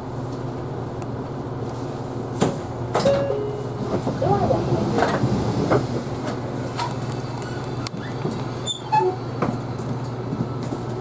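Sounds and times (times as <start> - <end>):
bus engine humming: 0.0 - 11.0.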